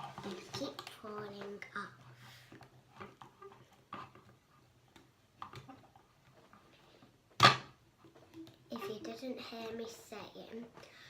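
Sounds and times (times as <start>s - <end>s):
faint clicks of plastic toys: 0.1s - 7.1s.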